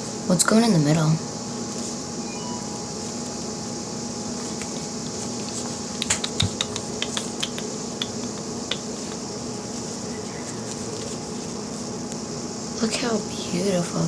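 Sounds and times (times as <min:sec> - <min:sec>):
steady background hum: 0:00.0 - 0:14.0.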